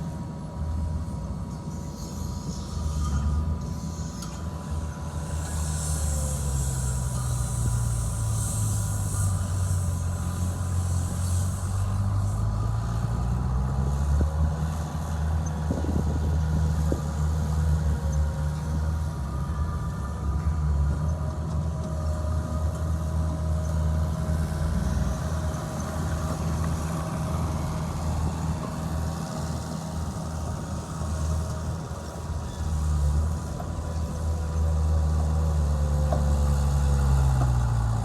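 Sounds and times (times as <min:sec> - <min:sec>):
bulldozer diesel engine under load: 0:00.0 - 0:38.0
high hiss: 0:05.4 - 0:13.0.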